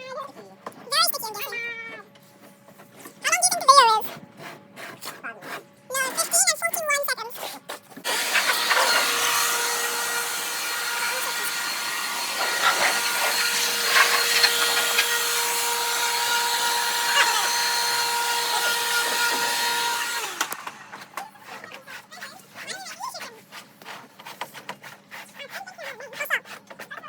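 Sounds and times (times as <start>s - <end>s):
electric blower motor whining: 8.0s - 21.4s.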